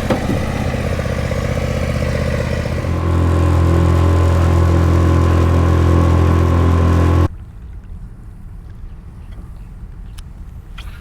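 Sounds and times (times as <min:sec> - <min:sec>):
outboard motor running: 0:00.0 - 0:07.3.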